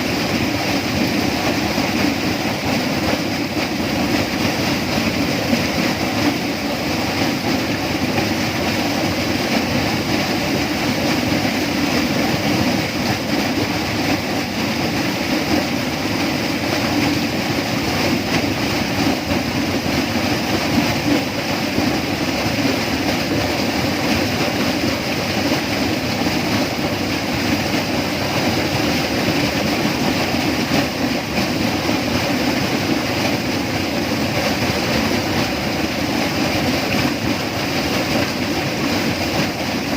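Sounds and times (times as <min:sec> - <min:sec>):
rainforest ambience rushing noise: 0:00.0 - 0:09.8.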